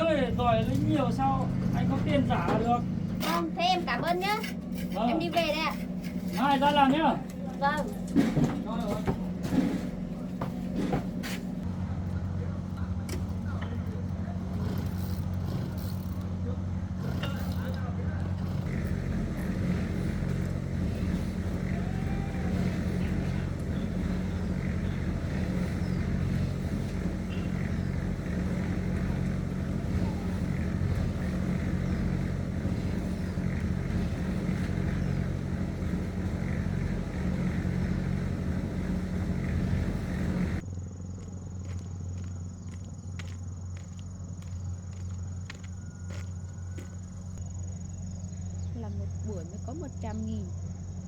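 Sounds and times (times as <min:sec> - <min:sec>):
low hum: 0:00.0 - 0:43.6
motorbike engine running: 0:08.7 - 0:40.6.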